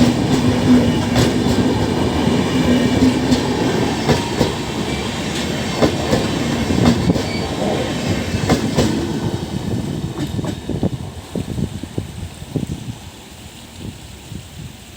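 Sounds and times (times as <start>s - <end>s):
train wheels clacking over rail joints: 0.0s - 10.9s.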